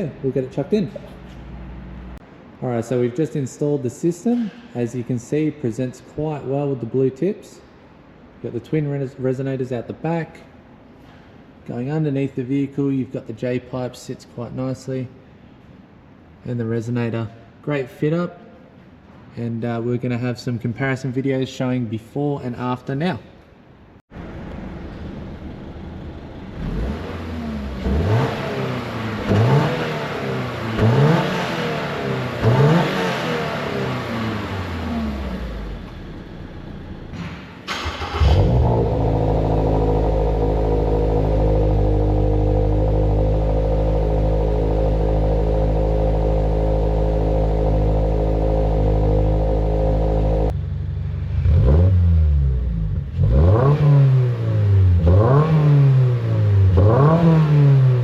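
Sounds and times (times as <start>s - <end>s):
car engine revving in quick blips: 26.6s - 36.1s, 37.1s - 50.5s, 51.3s - 58.0s.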